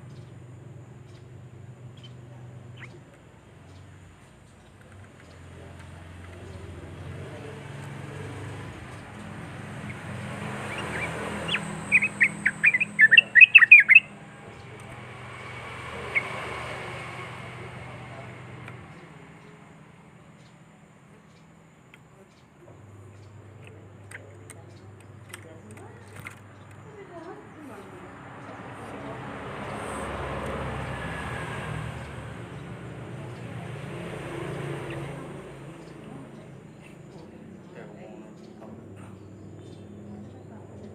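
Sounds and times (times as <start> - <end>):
bird chattering call: 8.6 - 18.3.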